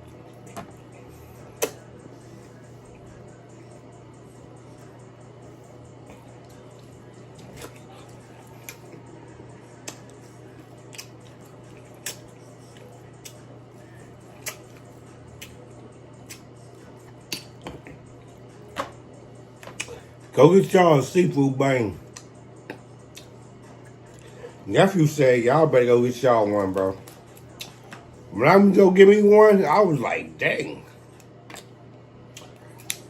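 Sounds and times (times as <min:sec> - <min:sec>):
low steady hum: 0:00.0 - 0:33.0
wet mouth sounds: 0:01.5 - 0:01.8, 0:10.9 - 0:13.4, 0:14.4 - 0:14.8.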